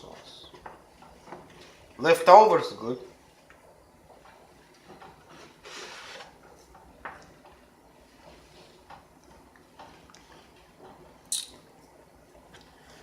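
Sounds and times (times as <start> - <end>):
short sharp scrape: 5.6 - 6.3.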